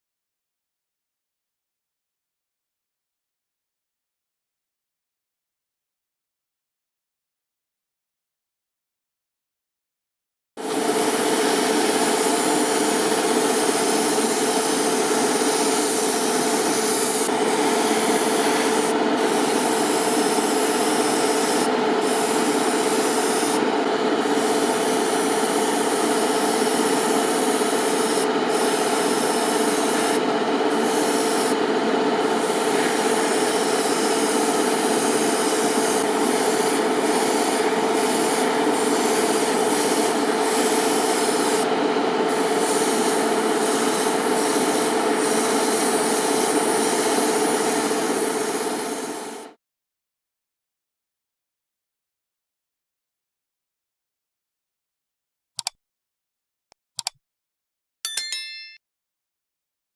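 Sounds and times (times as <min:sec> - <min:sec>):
small electric tool humming: 0:10.9 - 0:23.6.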